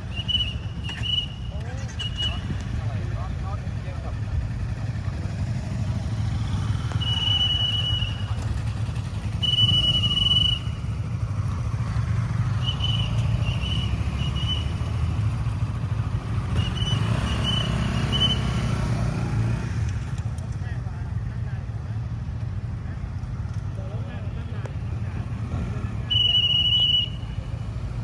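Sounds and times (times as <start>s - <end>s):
police whistle blasts: 0.0s - 2.8s, 6.8s - 11.1s, 12.4s - 15.4s, 16.4s - 18.8s, 25.9s - 27.7s.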